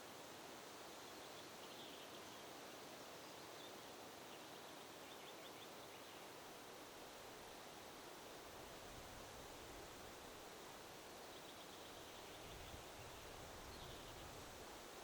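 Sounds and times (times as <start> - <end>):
faint wind hiss: 0.0 - 15.0
faint high bird chirps: 11.3 - 14.4.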